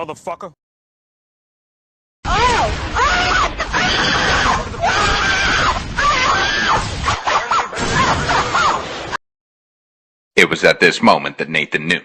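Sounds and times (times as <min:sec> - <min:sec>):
child screaming: 0:02.3 - 0:08.8.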